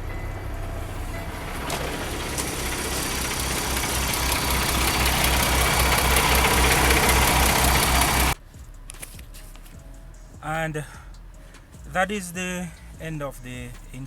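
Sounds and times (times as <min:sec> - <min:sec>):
diesel engine idling: 0:00.0 - 0:08.5.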